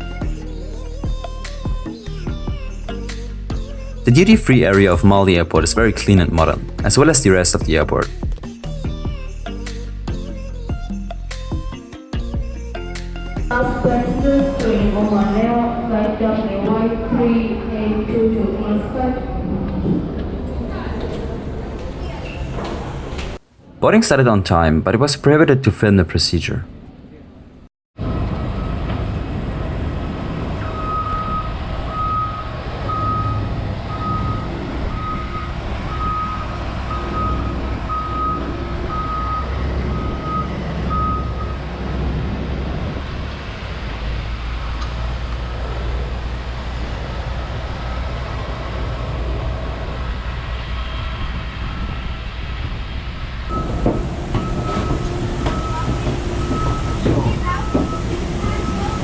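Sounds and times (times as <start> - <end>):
low engine rumble: 0.0 - 9.4, 13.5 - 23.4, 28.0 - 59.0
reversing alarm beeping: 30.6 - 41.6, 53.5 - 59.0.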